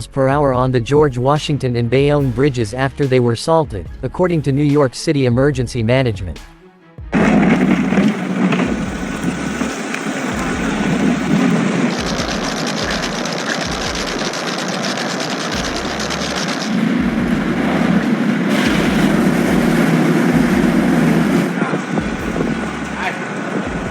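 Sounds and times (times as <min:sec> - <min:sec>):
street traffic: 0:07.2 - 0:23.9.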